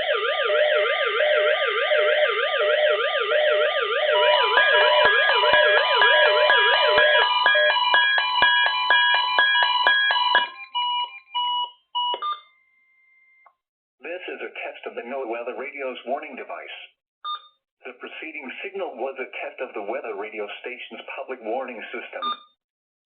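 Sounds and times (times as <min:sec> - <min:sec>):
warbling siren tones: 0:00.0 - 0:11.2.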